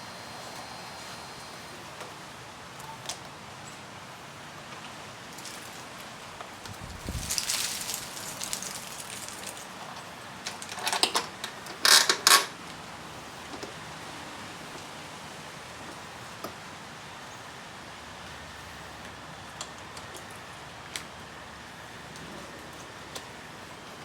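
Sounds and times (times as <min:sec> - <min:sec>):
metal parts rustling: 0:06.8 - 0:12.5.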